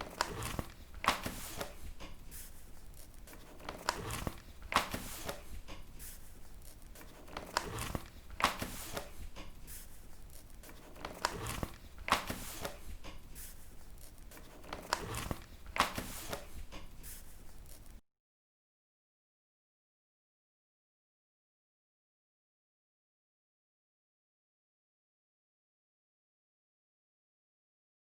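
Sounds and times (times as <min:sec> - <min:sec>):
paper pages turning: 0:00.0 - 0:18.0.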